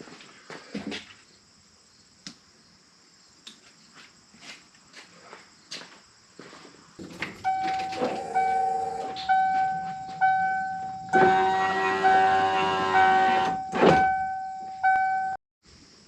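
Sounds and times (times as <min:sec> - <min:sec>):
vehicle warning chime dinging: 0:07.3 - 0:15.4.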